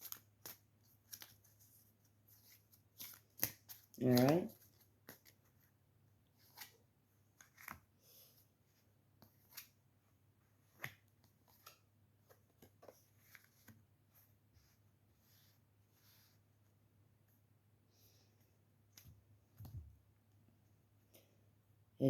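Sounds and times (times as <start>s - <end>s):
cards clicking and tapping: 2.5s - 5.4s.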